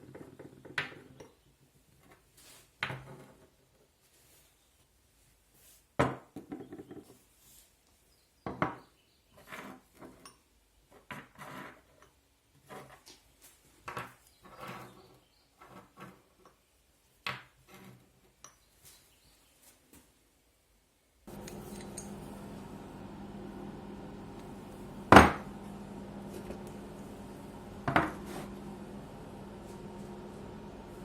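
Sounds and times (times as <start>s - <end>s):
hard parts knocking on workbench: 25.1s - 25.5s, 27.8s - 28.2s.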